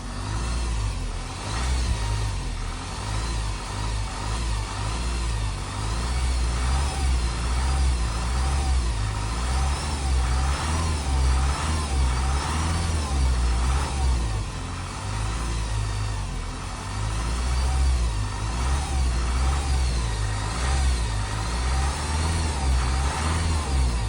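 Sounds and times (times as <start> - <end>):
diesel engine low rumble: 0.0 - 24.0
engine whine wavering in pitch: 0.0 - 24.0.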